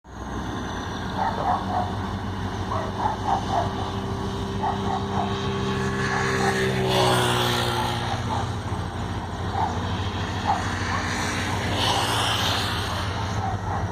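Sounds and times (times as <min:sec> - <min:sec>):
locomotive engine droning: 0:00.0 - 0:13.9
dog barking: 0:01.2 - 0:02.0, 0:02.7 - 0:03.9, 0:04.6 - 0:05.5, 0:06.1 - 0:06.6, 0:09.4 - 0:11.3, 0:12.9 - 0:13.9.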